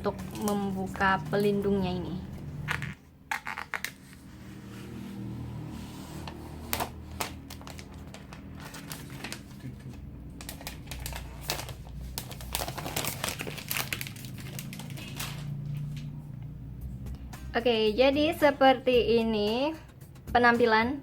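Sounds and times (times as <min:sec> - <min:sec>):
plastic wrap crinkling: 0:06.6 - 0:15.7.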